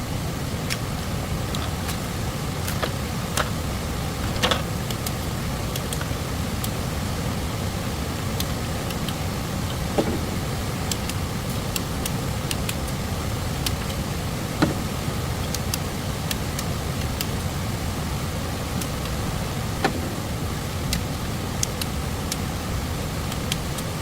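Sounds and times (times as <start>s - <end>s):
stream rushing: 0.0s - 24.0s
sharp knocks: 10.0s - 10.5s, 14.6s - 14.9s, 19.8s - 20.3s.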